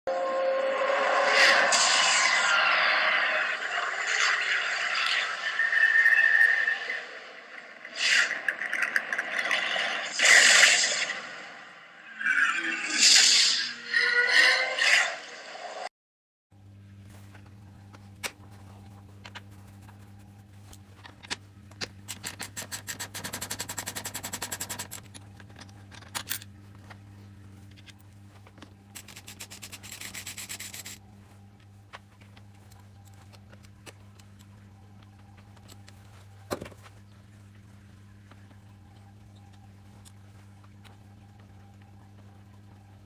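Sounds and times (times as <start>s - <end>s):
steady low hum: 16.5s - 43.0s
rapid clicking of hand tool: 22.1s - 25.1s.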